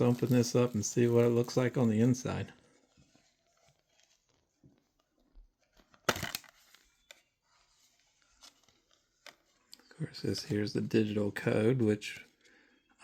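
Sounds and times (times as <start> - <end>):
disc case clicks: 6.0 - 7.2.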